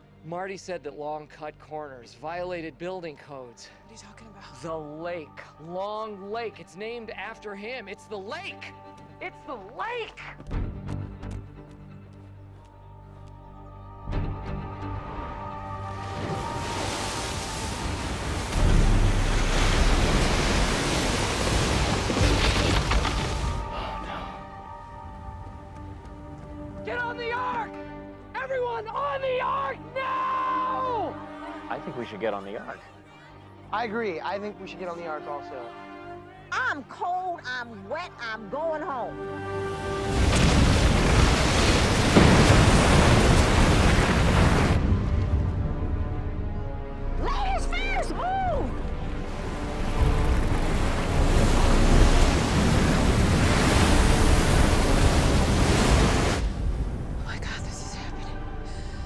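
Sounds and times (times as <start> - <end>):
floodwater rushing: 15.5 - 27.6, 39.2 - 57.4
deep rumble: 40.2 - 47.2.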